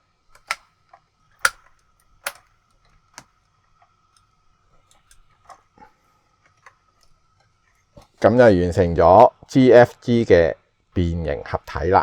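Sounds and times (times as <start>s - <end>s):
toy robot parts clicking: 0.4s - 0.6s, 1.4s - 2.4s.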